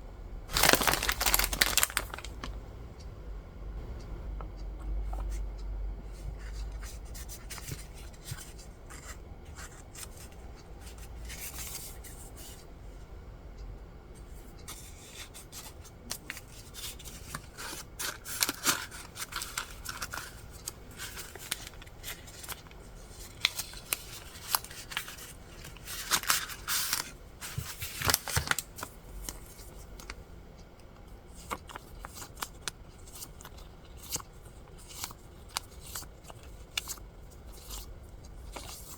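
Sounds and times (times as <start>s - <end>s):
paper rustling and sliding: 16.3s - 28.7s.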